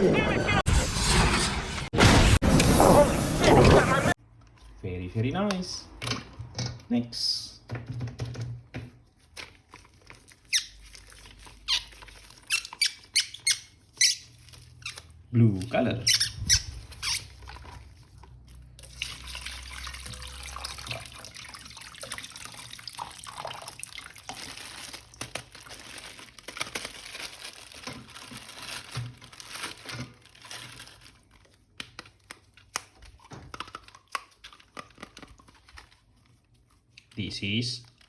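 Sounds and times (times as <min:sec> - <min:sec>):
plastic packaging crinkling: 0:09.2 - 0:38.0.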